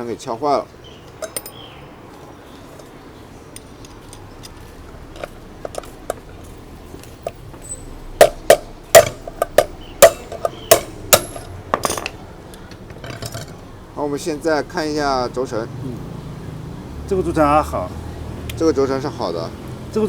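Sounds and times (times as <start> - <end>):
hammer ringing metal strikes: 8.2 - 12.1.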